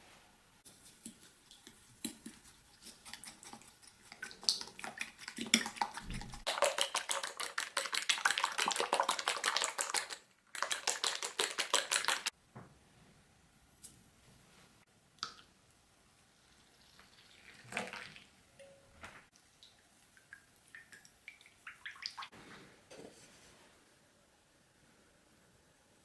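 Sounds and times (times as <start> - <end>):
utensil stirring in mixing bowl: 0.6 - 12.3.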